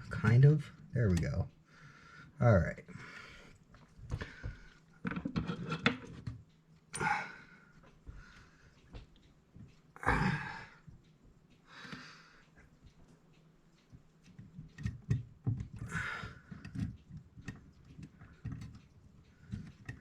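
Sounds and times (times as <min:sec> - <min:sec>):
clicks of small clock parts: 0:10.8 - 0:20.0.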